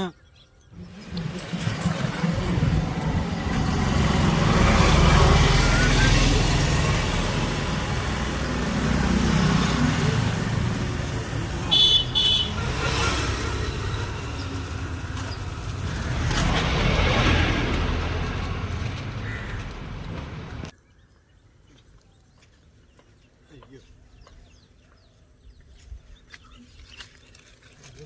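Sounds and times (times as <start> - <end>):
road traffic passing: 0.7 - 20.7
vehicle horn beeps: 11.5 - 14.7.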